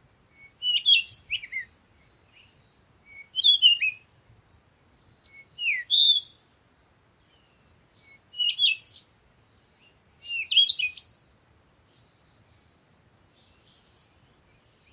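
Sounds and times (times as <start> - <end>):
songbirds warbling: 0.2 - 4.3, 5.0 - 14.9
faint thin bird chirps: 5.0 - 14.9.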